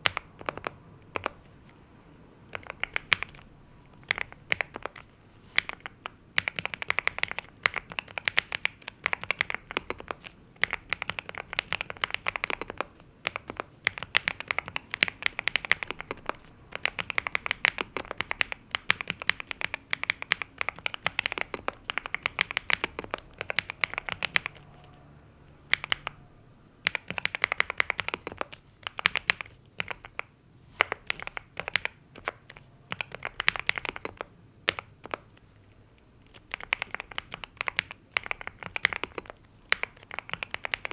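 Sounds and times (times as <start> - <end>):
mechanical keyboard key clacks: 0.0 - 1.4, 4.0 - 5.0, 26.9 - 30.2.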